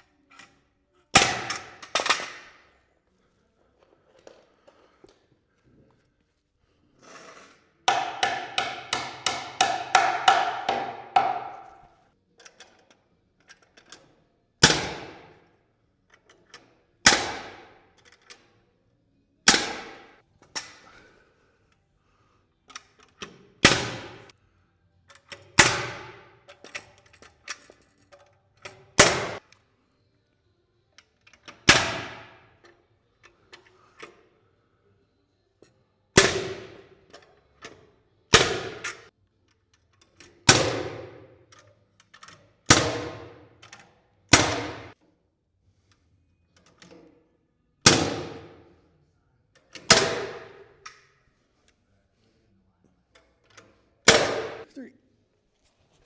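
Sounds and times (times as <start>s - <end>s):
nail gun shots into wood: 1.2s - 2.6s, 7.9s - 11.7s, 14.6s - 15.5s, 17.0s - 17.9s, 19.5s - 20.8s, 23.2s - 24.3s, 25.5s - 26.8s, 28.9s - 29.4s, 31.5s - 32.6s, 36.2s - 36.9s, 38.3s - 39.1s, 40.4s - 41.4s, 42.7s - 45.0s, 47.8s - 48.7s, 49.8s - 51.0s, 54.1s - 54.7s.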